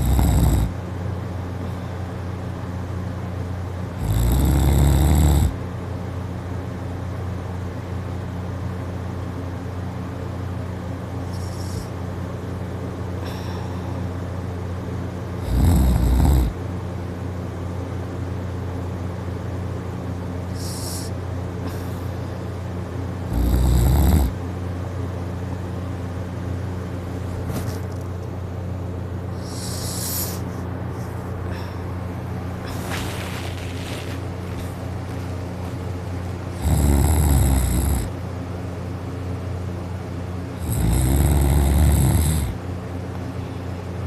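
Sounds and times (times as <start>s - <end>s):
person snoring loudly: 0.0s - 0.8s, 4.0s - 5.6s, 15.4s - 16.6s, 20.5s - 21.1s, 23.3s - 24.4s, 29.4s - 30.4s, 36.5s - 38.1s, 40.6s - 42.6s
steady low hum: 0.0s - 44.0s.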